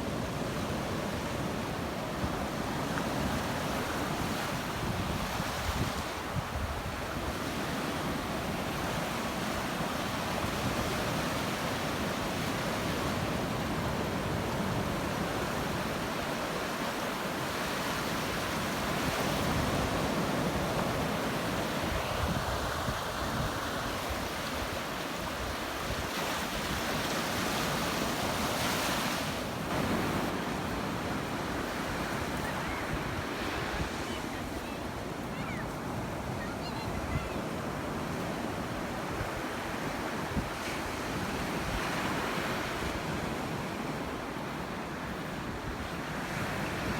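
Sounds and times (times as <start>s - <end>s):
waves breaking on beach: 0.0s - 46.9s
wind buffeting microphone: 19.0s - 28.7s.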